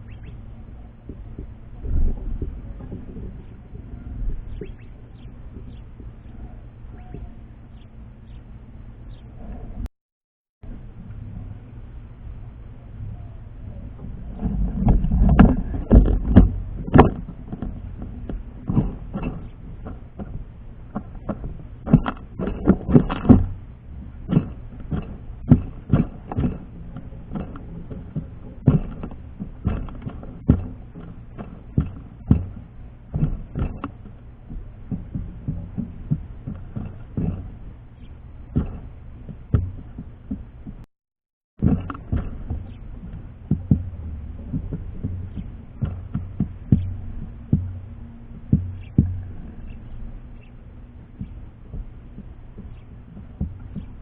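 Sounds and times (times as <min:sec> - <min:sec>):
birds pecking on a feeder: 0:00.0 - 0:09.6, 0:13.2 - 0:40.8, 0:41.6 - 0:54.0
heavier thumps: 0:14.0 - 0:40.9, 0:41.6 - 0:54.0.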